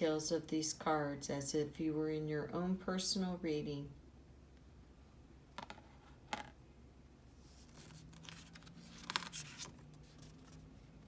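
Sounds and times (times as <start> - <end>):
cards tapping and scraping: 7.5 - 10.7.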